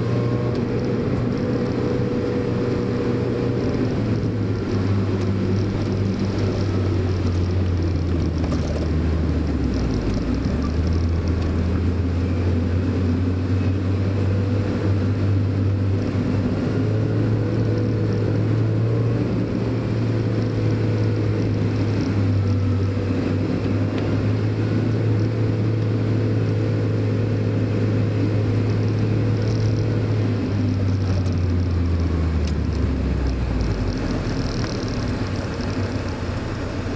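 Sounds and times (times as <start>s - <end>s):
car engine running: 0.0s - 36.9s
road noise: 0.0s - 36.9s.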